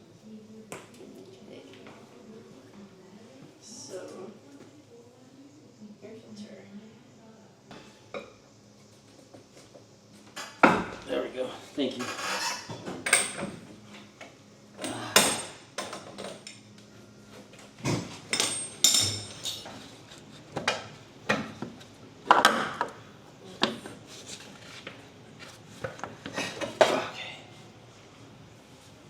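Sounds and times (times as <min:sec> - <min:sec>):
metal tools clanking: 0:18.3 - 0:19.7.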